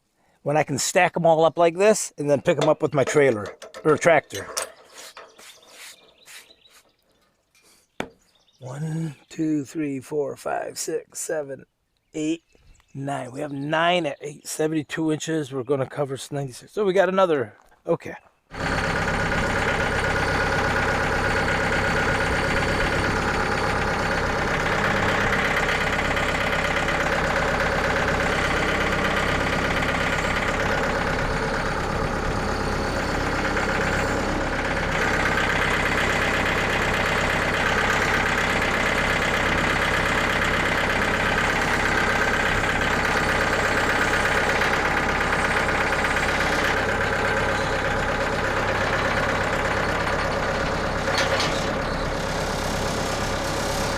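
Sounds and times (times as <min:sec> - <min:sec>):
sawmill engine running: 0:01.4 - 0:06.8, 0:18.5 - 0:53.9.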